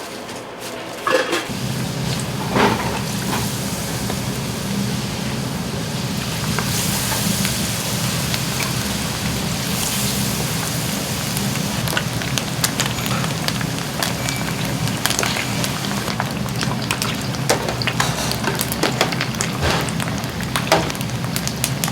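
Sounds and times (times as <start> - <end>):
food sizzling in hot oil: 1.5 - 21.9.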